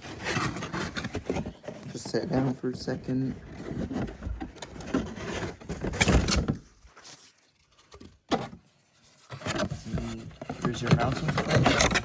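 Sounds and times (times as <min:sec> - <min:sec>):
packaging rustling and knocking: 0:09.2 - 0:12.0.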